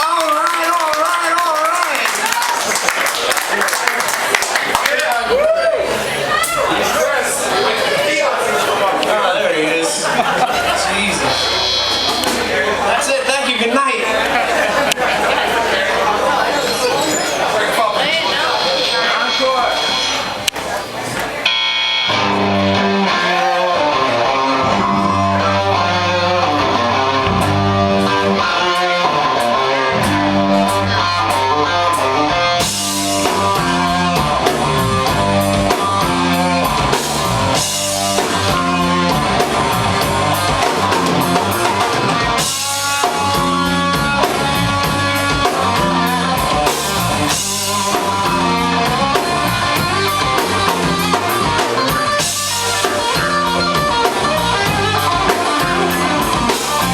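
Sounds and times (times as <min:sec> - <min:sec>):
bass guitar: 0:10.0 - 0:13.0, 0:21.4 - 0:56.9
electric guitar: 0:10.6 - 0:12.8, 0:18.6 - 0:56.9
drum kit: 0:10.7 - 0:12.8, 0:21.4 - 0:56.9.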